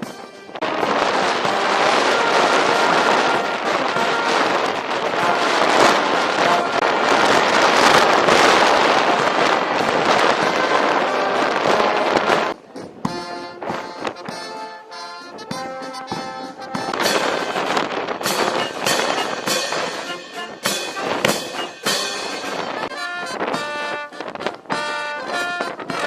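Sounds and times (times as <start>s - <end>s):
music: 0.0s - 26.0s
dense noisy crackle: 0.5s - 12.6s.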